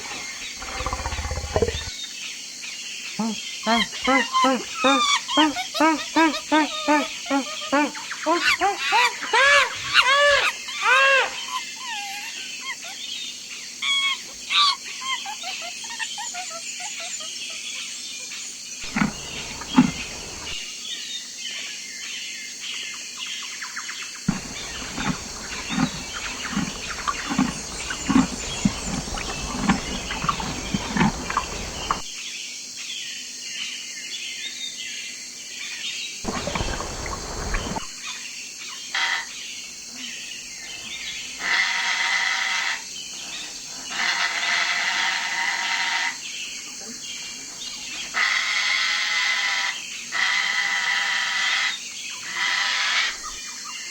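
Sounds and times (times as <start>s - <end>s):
birds chirping: 0.0s - 1.9s, 18.8s - 20.7s, 24.3s - 32.2s, 36.3s - 38.0s.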